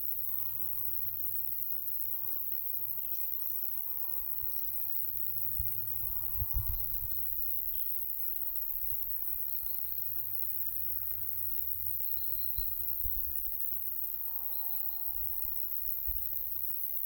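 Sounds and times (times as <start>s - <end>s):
insects chirring: 0.2s - 17.0s
wind rumble on microphone: 5.5s - 7.7s, 12.4s - 13.6s.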